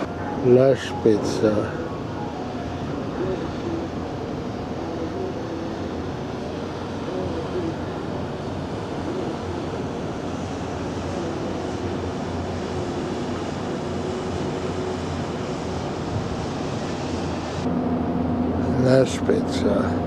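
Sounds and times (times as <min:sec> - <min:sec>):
wind rush on microphone: 0:08.4 - 0:17.6.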